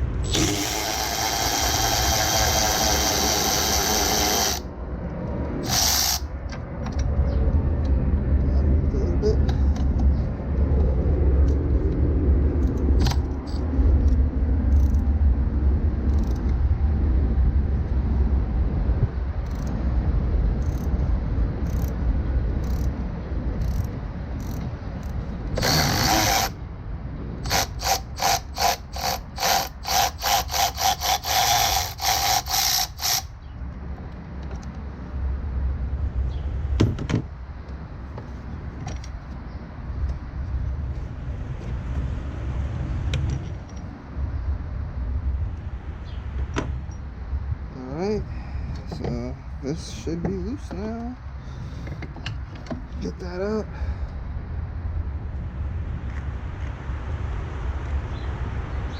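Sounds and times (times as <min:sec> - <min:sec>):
electric ratchet spinning: 0:00.0 - 0:04.7, 0:05.6 - 0:06.3, 0:25.6 - 0:26.6, 0:27.4 - 0:33.3
low rumble: 0:00.0 - 0:25.8.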